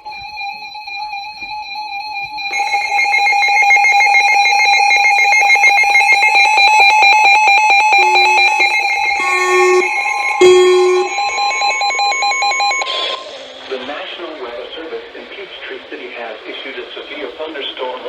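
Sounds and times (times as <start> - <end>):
high-pitched alert tones: 2.5 - 4.8, 6.2 - 13.0
rapid pulsing buzz: 7.1 - 11.3.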